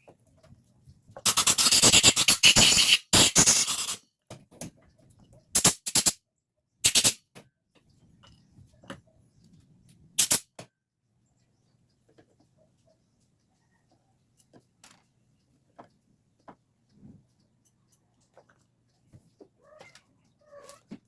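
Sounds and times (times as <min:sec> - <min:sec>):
air blowgun hissing blasts: 0:01.3 - 0:04.0, 0:05.6 - 0:06.1, 0:06.9 - 0:07.2, 0:10.2 - 0:10.4.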